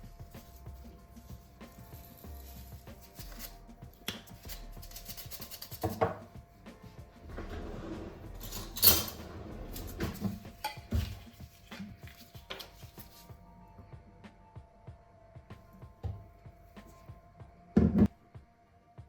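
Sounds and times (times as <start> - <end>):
soft background music: 0.0 - 19.0
dishes and utensils clattering: 7.2 - 13.2.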